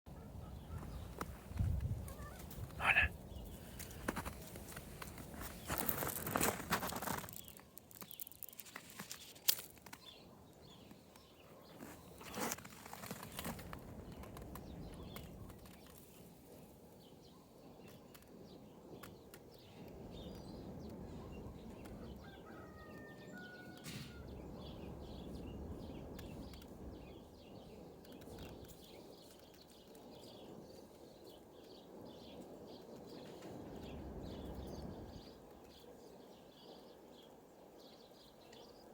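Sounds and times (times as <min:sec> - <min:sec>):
faint bird chirps: 0:02.1 - 0:03.5.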